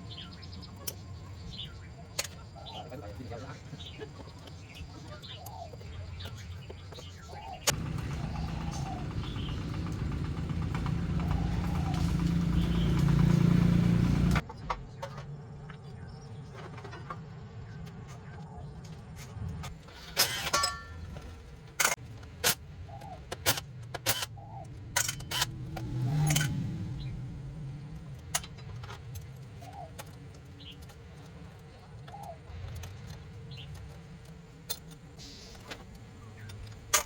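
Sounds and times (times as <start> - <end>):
low background rumble: 7.7 - 15.0
metal tools clinking: 20.0 - 21.2, 24.9 - 25.6.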